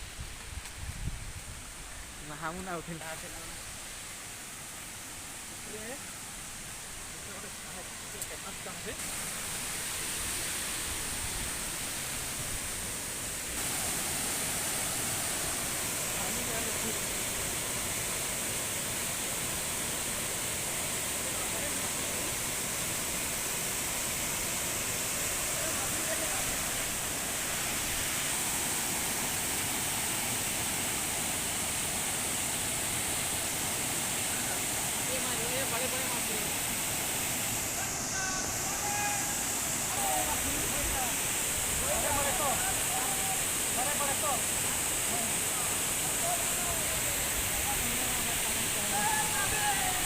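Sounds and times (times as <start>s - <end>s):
waterfall rushing water: 1.5s - 50.0s.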